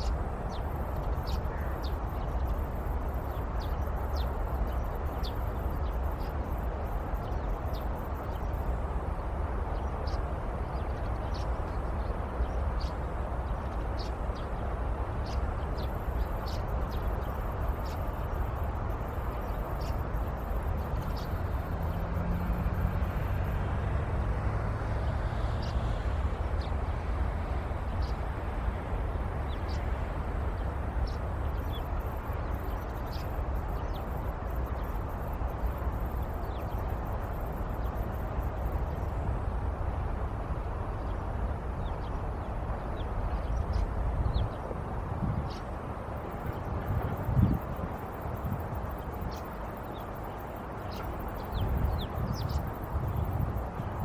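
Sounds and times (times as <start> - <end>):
distant traffic: 0.0 - 54.0
wind: 0.0 - 54.0.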